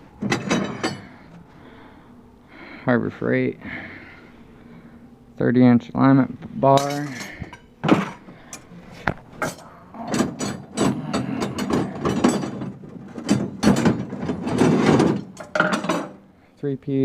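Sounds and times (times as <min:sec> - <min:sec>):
metal tools clanking in a toolbox: 0:00.2 - 0:01.3, 0:06.7 - 0:08.6, 0:09.4 - 0:16.2.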